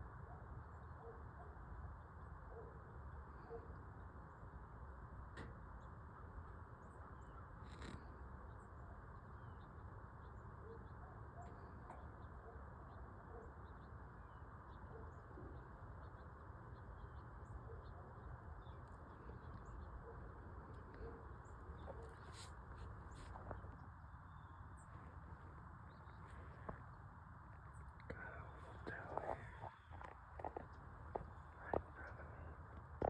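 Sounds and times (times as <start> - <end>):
faint bird calls: 6.2 - 33.0.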